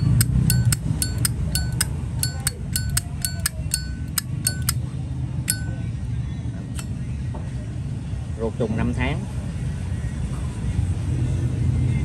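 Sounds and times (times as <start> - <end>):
lighter lid metallic clicks: 0.0 - 4.8.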